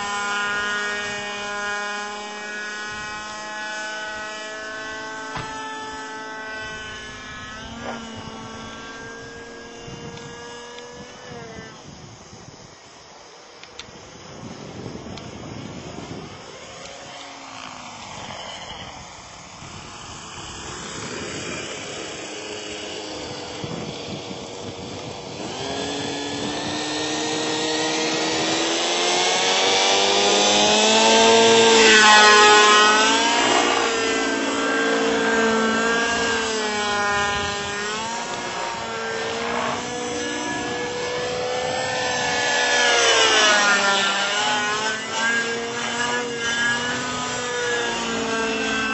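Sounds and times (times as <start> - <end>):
model helicopter flying: 0.0 - 48.9.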